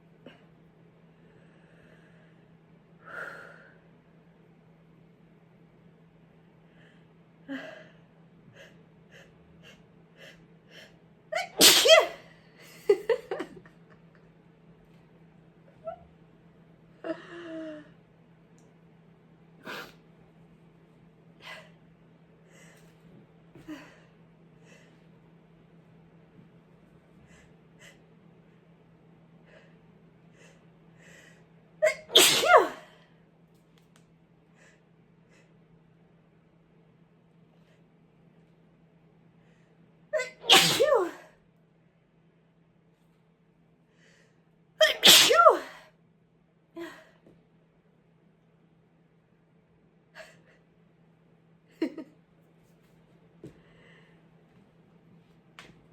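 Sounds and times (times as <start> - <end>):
faint breaths: 1.1 - 3.9, 29.4 - 31.6, 53.5 - 54.5
person sneezing: 11.4 - 12.3, 31.8 - 33.0, 40.2 - 41.3, 44.8 - 45.8.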